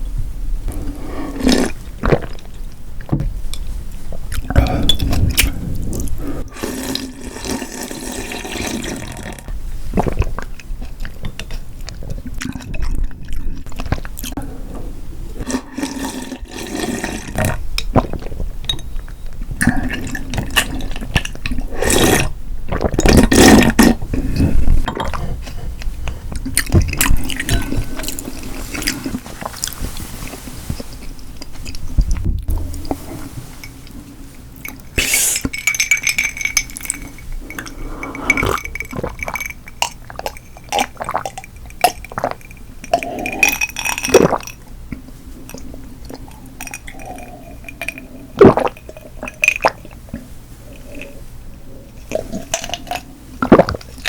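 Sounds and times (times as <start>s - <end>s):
tableware clinking: 34.6s - 39.9s
wet liquid sounds: 36.8s - 44.6s.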